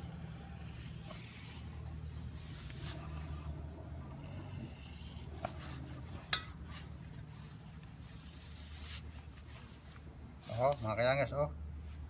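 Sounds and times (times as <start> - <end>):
metal clinks and rubbing: 0.0 - 3.3
steady low hum: 0.0 - 10.3.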